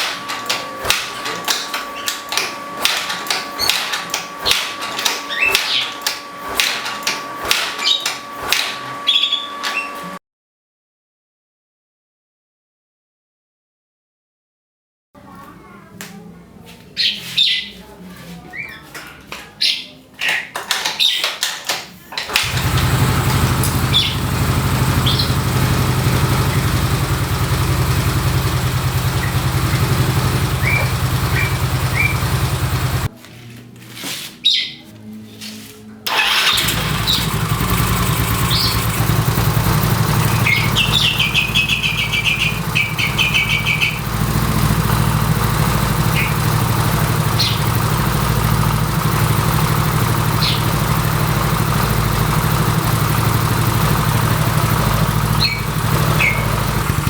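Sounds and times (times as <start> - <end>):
scooter engine running: 0.0 - 10.2, 22.3 - 33.1, 36.1 - 57.0
birds chirping: 22.5 - 33.1, 36.5 - 57.0.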